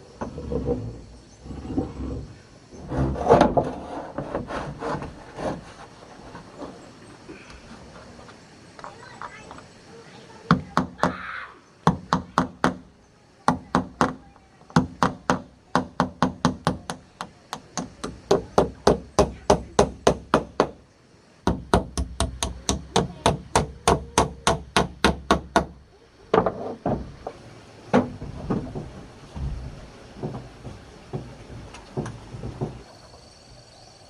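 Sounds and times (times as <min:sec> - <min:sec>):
hard blows on wood: 0:21.4 - 0:32.9.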